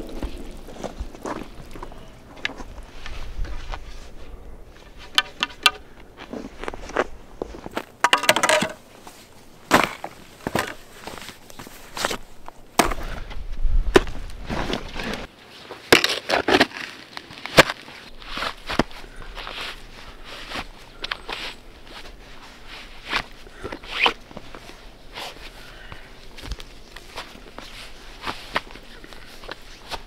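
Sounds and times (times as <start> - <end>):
snow crunching: 0.0 - 5.1.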